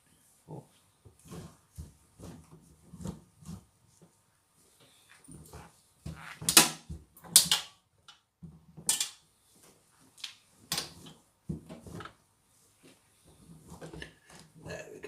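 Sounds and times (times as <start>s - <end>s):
laundry rustling: 9.3s - 14.8s.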